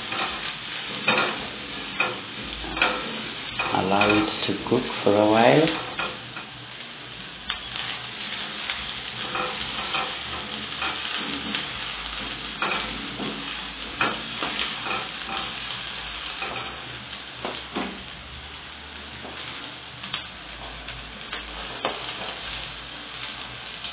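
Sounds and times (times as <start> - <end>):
spoon scraping and knocking pan: 0.0 - 4.5, 9.2 - 15.6
onions sizzling in oil: 0.0 - 23.9.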